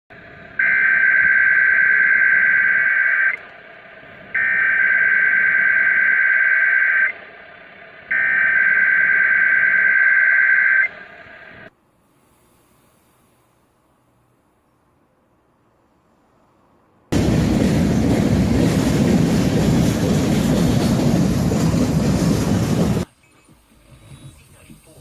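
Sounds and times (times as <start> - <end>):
receiver hiss: 0.2 - 13.5.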